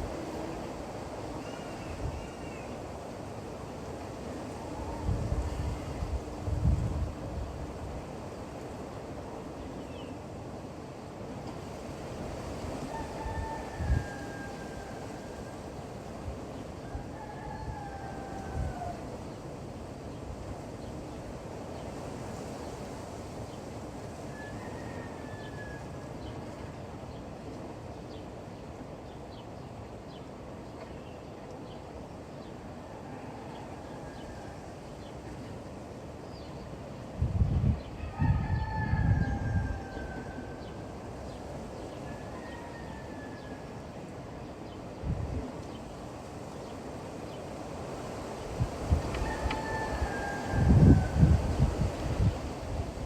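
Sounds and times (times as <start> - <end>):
distant rooster crowing: 0.0 - 2.8, 4.3 - 6.4, 12.6 - 15.9, 16.7 - 19.4, 24.2 - 26.6, 32.7 - 35.1, 37.8 - 44.0, 48.6 - 53.0
steady wind: 0.0 - 53.0.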